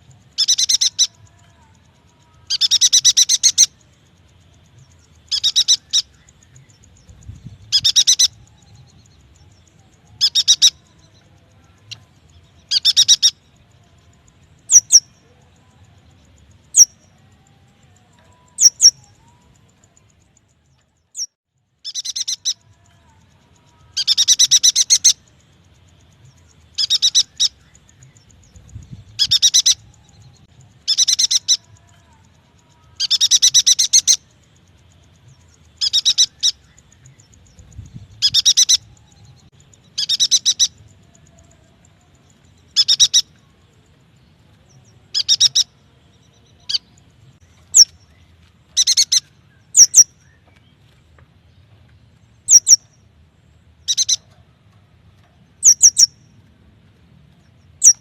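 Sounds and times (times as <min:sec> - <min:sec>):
bird chirping rapidly: 0:00.2 - 0:01.2, 0:02.5 - 0:09.6, 0:10.2 - 0:10.9, 0:12.6 - 0:13.4, 0:14.6 - 0:15.1, 0:18.4 - 0:19.2, 0:21.1 - 0:22.7, 0:24.0 - 0:31.7, 0:33.0 - 0:35.0, 0:35.6 - 0:40.9, 0:42.6 - 0:43.4, 0:45.1 - 0:45.8, 0:46.6 - 0:48.1, 0:48.8 - 0:50.4, 0:52.4 - 0:53.0, 0:53.7 - 0:54.3, 0:55.6 - 0:56.3, 0:57.7 - 0:58.0.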